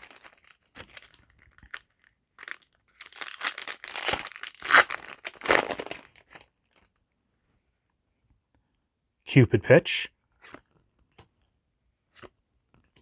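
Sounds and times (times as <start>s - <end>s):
foil wrapper crinkling and tearing: 0.0s - 6.5s.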